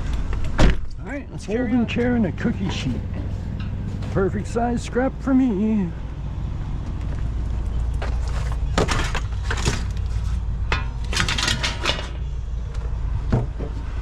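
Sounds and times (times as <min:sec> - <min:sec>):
van engine idling: 0:00.0 - 0:14.0
scrap metal clattering: 0:08.0 - 0:12.3.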